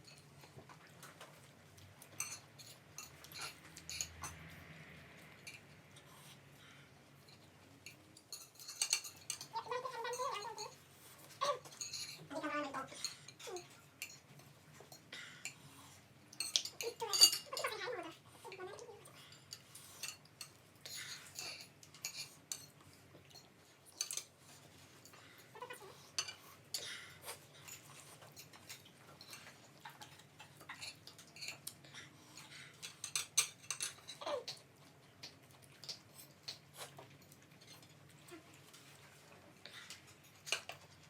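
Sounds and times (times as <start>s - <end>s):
cutlery clinking on plates: 2.0s - 4.6s, 7.2s - 10.8s, 11.4s - 12.3s, 16.3s - 17.8s, 19.5s - 25.3s, 26.1s - 34.6s, 39.8s - 41.0s.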